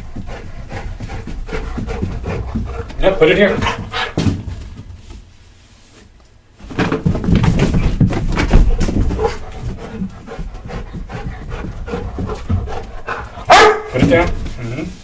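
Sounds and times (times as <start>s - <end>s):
dog panting: 0.0s - 4.3s, 8.5s - 14.9s
scuffing dog footfalls: 0.0s - 5.3s, 6.6s - 15.0s.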